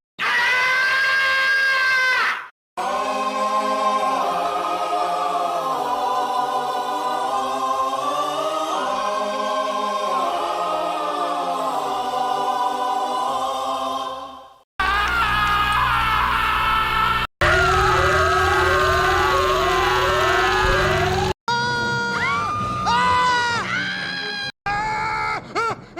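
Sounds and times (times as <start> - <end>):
crowd screaming: 0.2 - 2.5, 14.8 - 25.2
scream sliding in pitch: 14.8 - 21.4.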